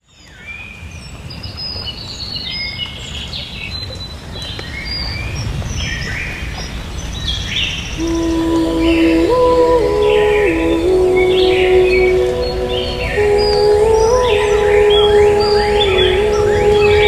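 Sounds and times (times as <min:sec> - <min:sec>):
birds chirping and whistling: 0:10.4 - 0:17.0.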